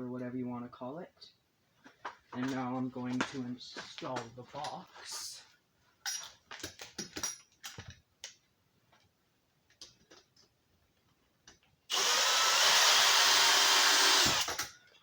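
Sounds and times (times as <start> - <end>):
clicks and knocks of parts handled: 6.0 - 11.8
power drill driving a screw: 11.9 - 14.7.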